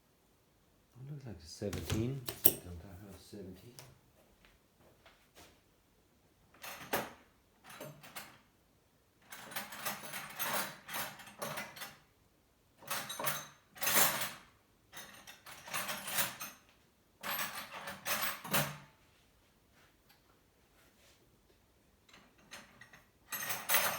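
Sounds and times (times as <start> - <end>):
metal tools clattering: 22.2 - 23.9.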